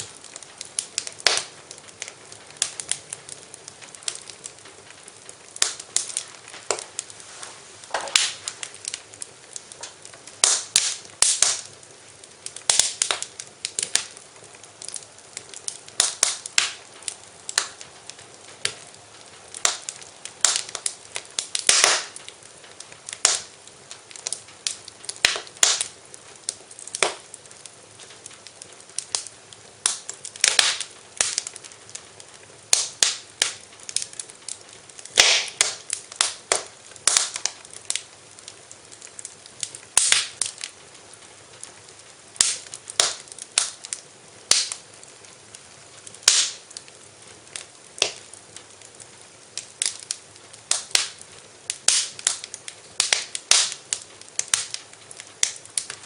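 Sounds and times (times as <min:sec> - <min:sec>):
low steady hiss: 0:00.0 - 0:56.0
wood fire crackling and popping: 0:00.0 - 0:56.0.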